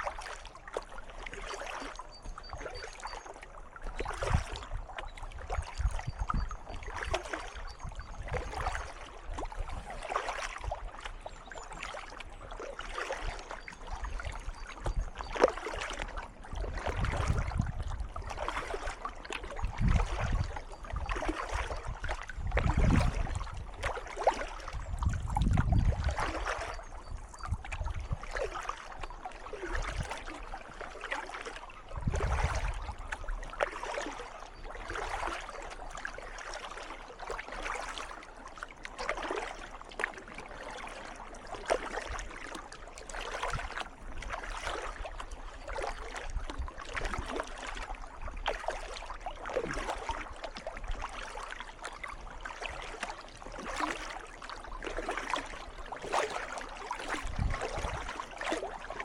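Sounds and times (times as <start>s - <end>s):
kayak paddle splashing in water: 0.0s - 59.0s.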